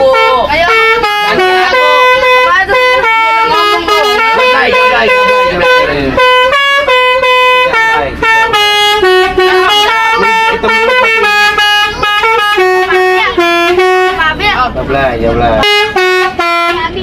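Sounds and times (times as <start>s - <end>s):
musical air horn playing a tune: 0.0s - 14.3s, 15.6s - 17.0s.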